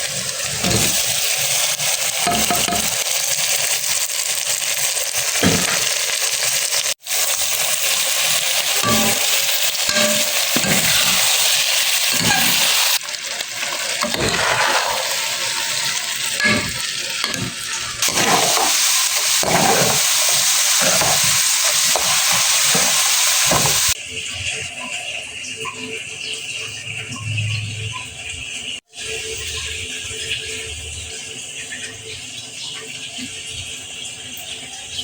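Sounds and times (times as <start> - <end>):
food sizzling in hot oil: 0.0 - 24.1
utensil scraping a pan: 8.7 - 13.0, 14.0 - 24.0.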